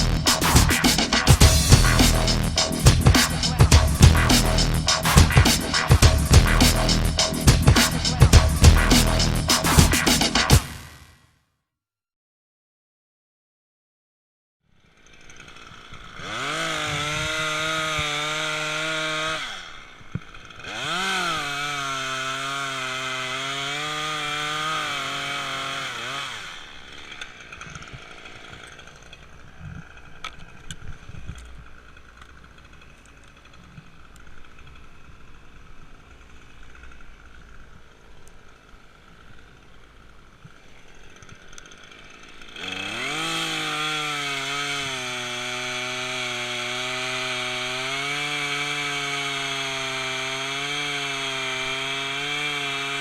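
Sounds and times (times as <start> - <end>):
two-stroke chainsaw revving: 0.0 - 11.1, 14.8 - 53.0.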